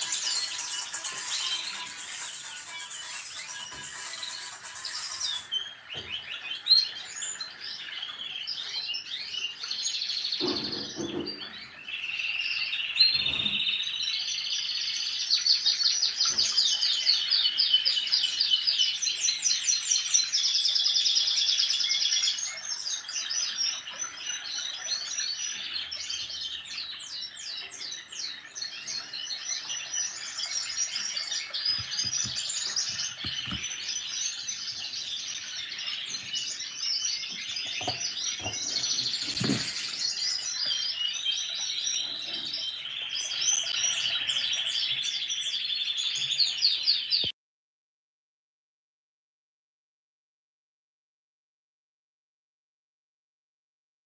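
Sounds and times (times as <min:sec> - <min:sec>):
birds chirping and trilling: 0:00.0 - 0:47.3.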